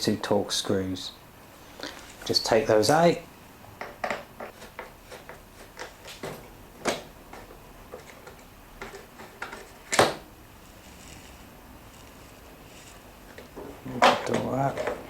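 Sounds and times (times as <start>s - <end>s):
screwdriver clicks and knocks: 3.8s - 10.2s.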